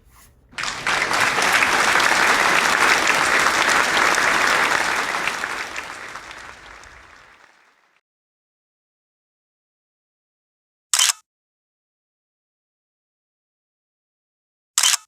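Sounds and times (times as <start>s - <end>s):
applause: 0.5s - 8.0s.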